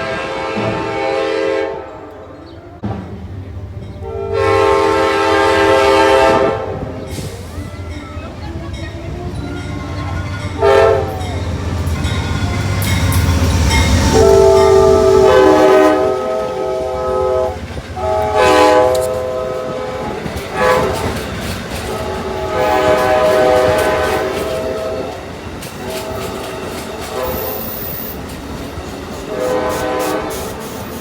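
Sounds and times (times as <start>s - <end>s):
train air horn blasts: 0.0s - 2.4s, 4.0s - 7.9s, 10.5s - 11.5s, 13.8s - 28.1s, 29.3s - 31.0s
low rumble of train: 0.0s - 31.0s.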